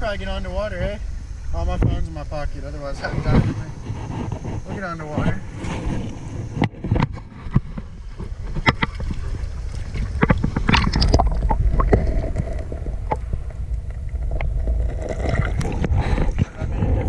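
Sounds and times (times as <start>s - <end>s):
wind rumble on microphone: 0.0s - 17.0s
water splashing and sloshing: 5.2s - 17.0s.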